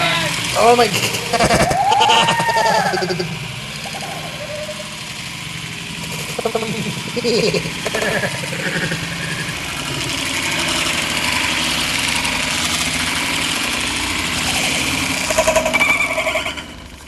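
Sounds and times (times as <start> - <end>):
remote-control car motor running: 0.6 - 3.3.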